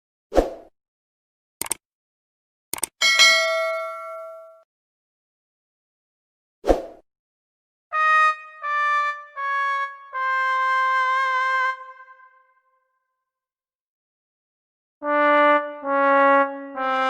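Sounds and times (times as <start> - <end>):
short click: 1.6 - 1.8, 2.7 - 2.9.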